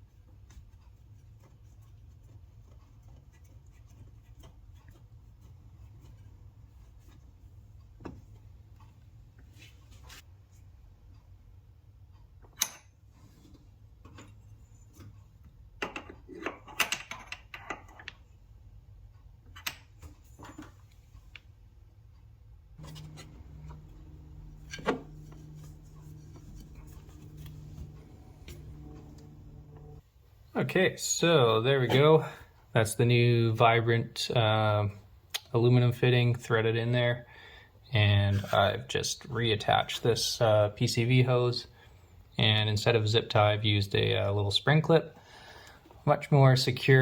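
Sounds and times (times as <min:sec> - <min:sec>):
steady low hum: 0:22.7 - 0:33.1
rubbing and scraping: 0:22.8 - 0:30.0.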